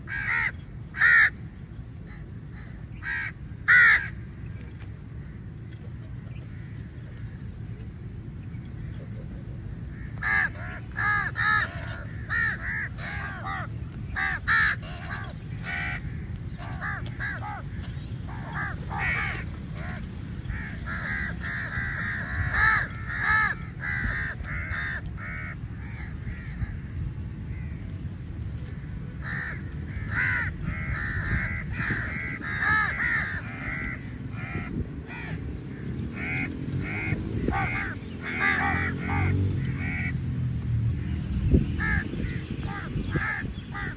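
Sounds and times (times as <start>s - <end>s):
crows cawing: 0.1s - 1.4s, 2.1s - 4.2s, 9.9s - 26.8s, 29.2s - 35.4s, 36.1s - 40.2s, 41.8s - 43.9s.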